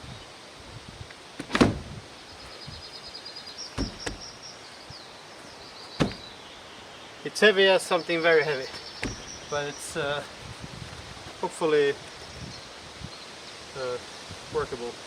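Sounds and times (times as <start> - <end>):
wooden door knocking against frame: 3.8 - 4.3, 6.0 - 6.2, 9.0 - 9.3.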